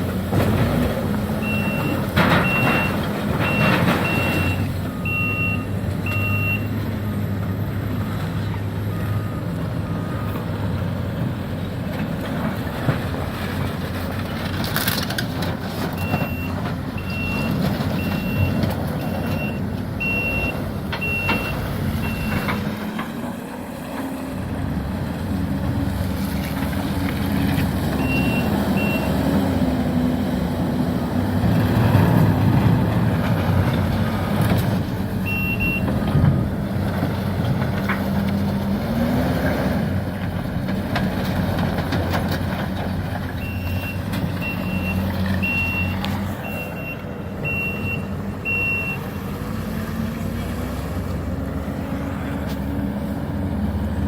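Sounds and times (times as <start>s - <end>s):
diesel demolition machinery running: 0.0s - 54.0s
reversing alarm beeping: 1.4s - 6.8s, 16.0s - 22.6s, 28.0s - 29.2s, 35.2s - 36.0s, 43.4s - 49.1s.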